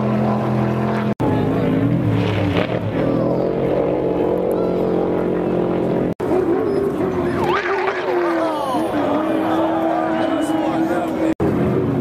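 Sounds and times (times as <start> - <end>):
race vehicle engines revving: 0.0 - 12.0.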